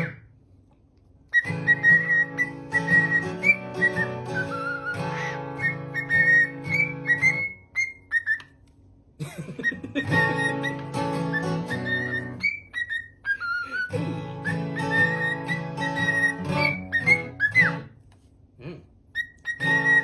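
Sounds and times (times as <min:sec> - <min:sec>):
parrot whistling a tune: 0:00.0 - 0:00.3, 0:01.3 - 0:08.6, 0:09.6 - 0:18.0, 0:19.1 - 0:20.0
guitar music: 0:01.4 - 0:07.7, 0:09.8 - 0:12.5, 0:13.9 - 0:18.0, 0:19.6 - 0:20.0.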